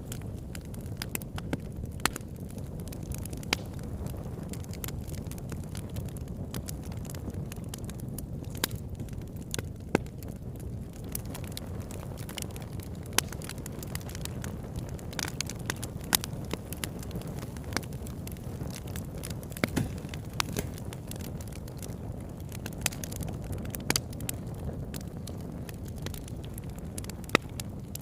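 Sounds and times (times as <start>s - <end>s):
crackles and pops of burning wood: 0.0s - 28.0s
low rumble of flames: 0.0s - 28.0s.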